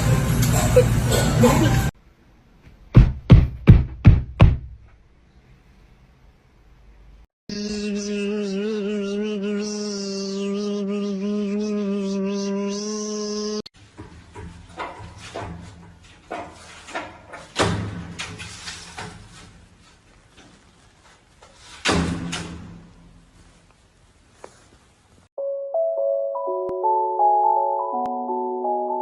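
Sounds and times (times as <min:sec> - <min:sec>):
irregular knocks and bangs: 0:02.9 - 0:04.8
piano music: 0:25.4 - 0:29.0.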